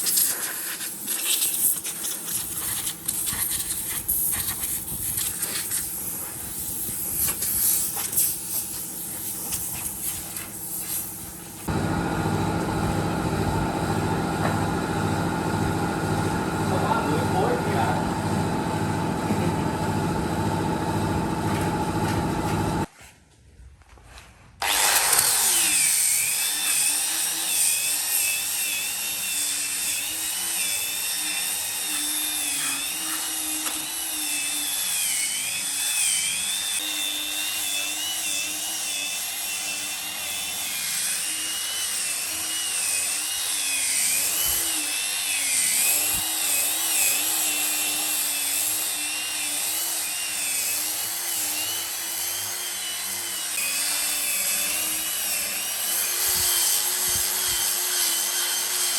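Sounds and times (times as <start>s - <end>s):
hiss of sanding: 0.0s - 11.7s
power tool motor on wood: 2.4s - 22.9s, 24.6s - 58.9s.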